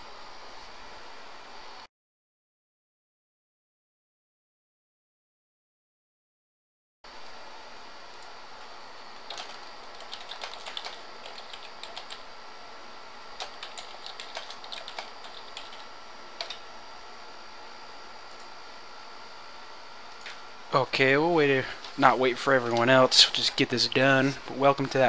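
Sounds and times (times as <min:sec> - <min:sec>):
faint electronic hum: 0:00.0 - 0:01.9, 0:07.1 - 0:25.0
keyboard typing: 0:09.2 - 0:12.2, 0:13.4 - 0:16.6.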